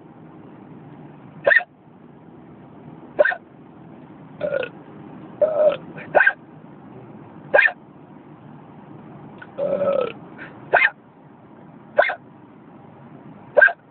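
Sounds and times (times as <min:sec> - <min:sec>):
car cabin noise: 0:00.0 - 0:13.9
person hiccuping: 0:04.4 - 0:04.8, 0:05.4 - 0:06.4, 0:09.5 - 0:10.2.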